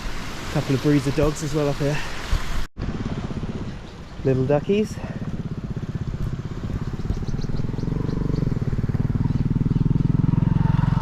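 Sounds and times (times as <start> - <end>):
motorcycle engine chugging: 2.9 - 11.0.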